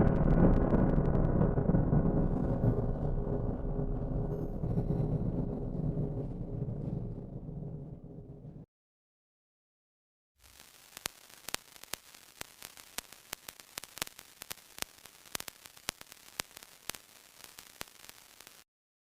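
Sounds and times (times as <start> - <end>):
crackling static hiss: 0.0 - 2.9, 10.4 - 18.7.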